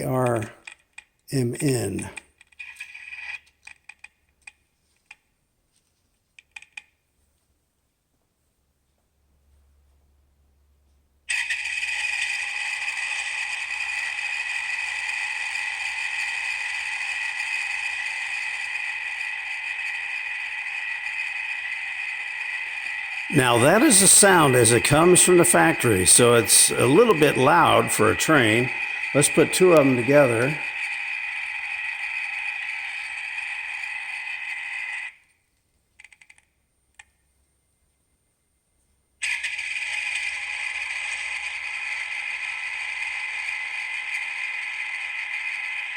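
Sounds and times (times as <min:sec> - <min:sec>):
generator engine sound from tiny speaker: 0:23.3 - 0:30.7.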